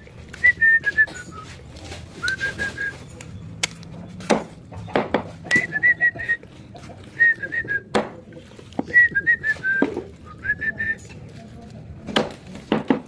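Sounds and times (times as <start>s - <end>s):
person whistling a tune: 0.4s - 1.6s, 2.2s - 3.1s, 5.5s - 6.4s, 7.2s - 7.9s, 8.9s - 11.1s.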